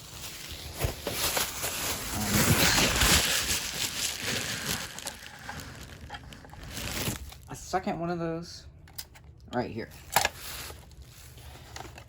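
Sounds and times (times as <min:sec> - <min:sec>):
packaging rustling: 0:00.0 - 0:07.5, 0:10.0 - 0:12.0.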